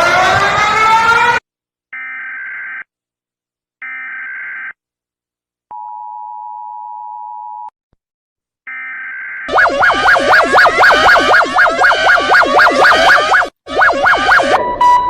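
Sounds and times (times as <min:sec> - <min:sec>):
screechy digital data bursts: 0:09.5 - 0:14.6
steady attention tone: 0:09.5 - 0:15.0.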